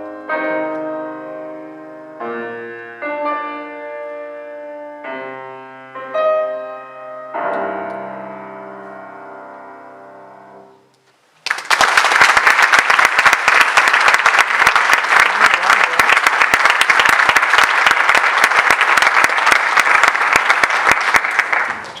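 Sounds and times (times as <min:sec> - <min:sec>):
piano waltz: 0:00.0 - 0:10.8
audience applause: 0:11.4 - 0:22.0.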